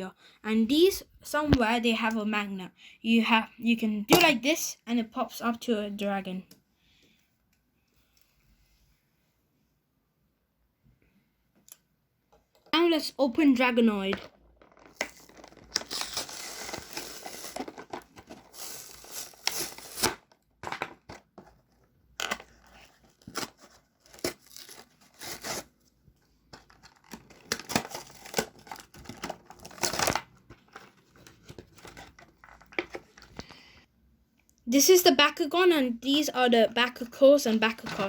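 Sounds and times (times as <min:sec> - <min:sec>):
packaging being torn open: 0:14.8 - 0:20.2, 0:22.8 - 0:25.7, 0:26.8 - 0:30.3.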